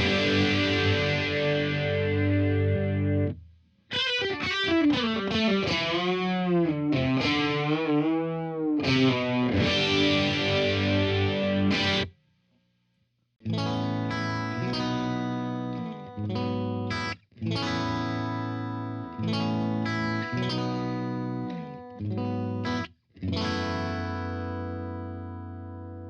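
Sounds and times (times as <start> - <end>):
distorted electric guitar chords: 0.0 - 12.1.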